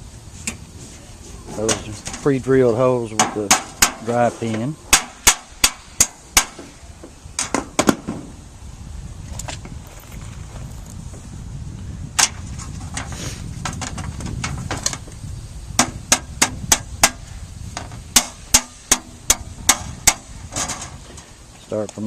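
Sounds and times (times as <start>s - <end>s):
hammer striking metal: 4.9s - 6.7s.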